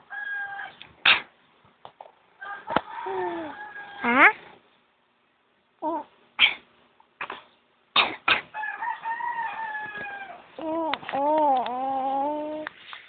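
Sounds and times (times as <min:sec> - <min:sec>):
baby coughing: 0:08.0 - 0:08.5.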